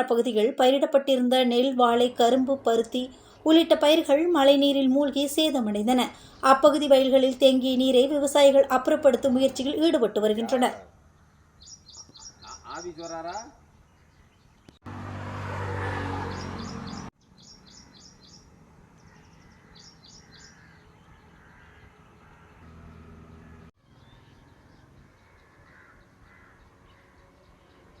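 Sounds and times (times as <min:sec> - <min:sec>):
birds chirping: 0:00.0 - 0:14.8, 0:16.2 - 0:28.0
crows cawing: 0:11.9 - 0:13.1, 0:19.1 - 0:22.6, 0:25.2 - 0:27.2
engine running: 0:14.9 - 0:17.1.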